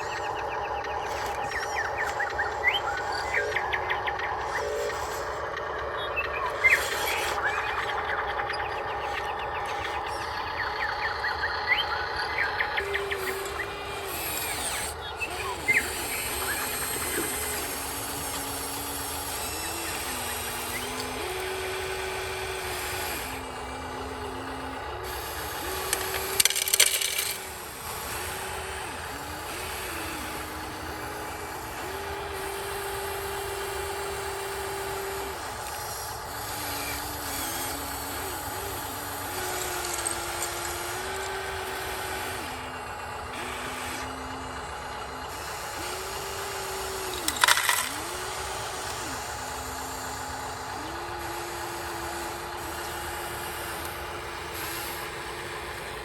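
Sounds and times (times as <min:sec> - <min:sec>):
gravel clattering: 0:00.0 - 0:28.9, 0:38.4 - 0:42.8, 0:46.6 - 0:51.4
small electric motors whining: 0:00.0 - 0:56.0.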